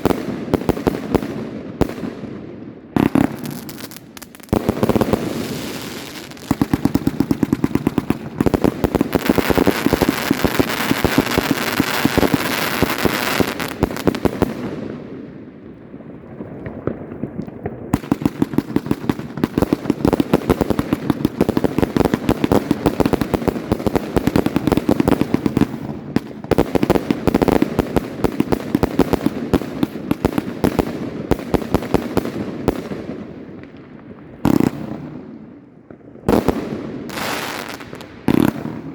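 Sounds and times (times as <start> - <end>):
firework battery volley: 3.0 - 15.1.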